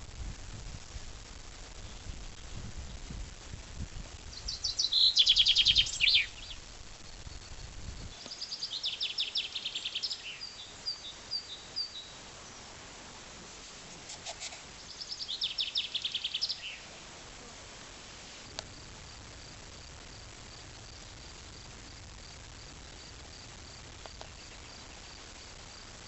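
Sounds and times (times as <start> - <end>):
insect chirping: 4.0 - 13.2, 14.0 - 17.6, 18.4 - 26.0.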